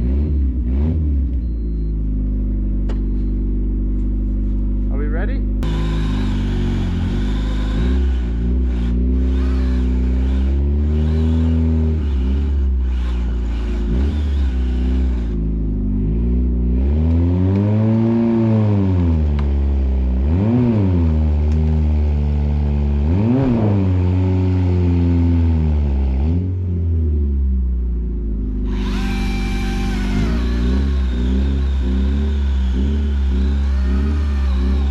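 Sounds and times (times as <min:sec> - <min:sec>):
car engine revving hard: 0:00.0 - 0:01.3, 0:05.6 - 0:19.2, 0:20.2 - 0:21.6, 0:23.0 - 0:26.5, 0:28.7 - 0:34.9
wheels spinning: 0:05.6 - 0:15.4, 0:28.7 - 0:34.9.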